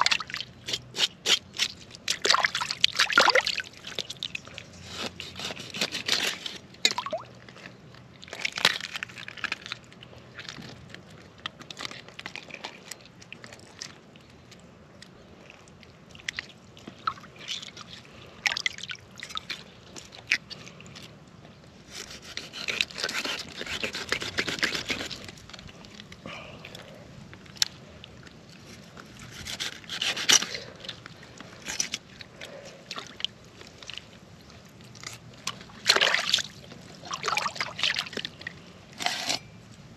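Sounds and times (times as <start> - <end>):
water sloshing and dripping: 0.0 - 0.7, 1.7 - 4.8, 11.1 - 21.5, 29.8 - 38.8
clicks crunches and scrapes: 0.0 - 39.9.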